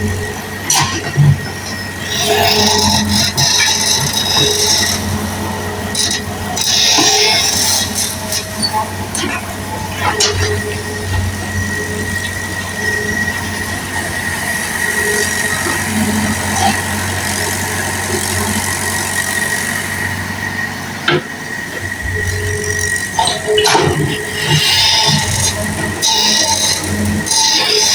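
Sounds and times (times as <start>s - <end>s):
excavator engine humming: 0.0s - 27.9s
high whine: 21.7s - 27.4s.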